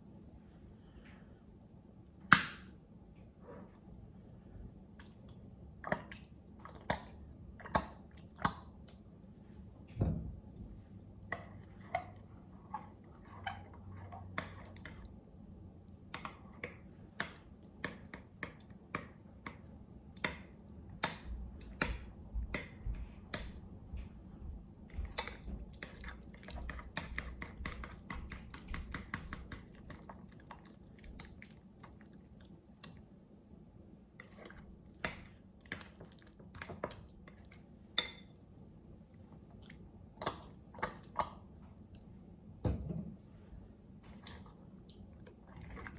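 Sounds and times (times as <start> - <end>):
slime wet clicks and squelches: 5.0 - 9.1, 39.6 - 42.1.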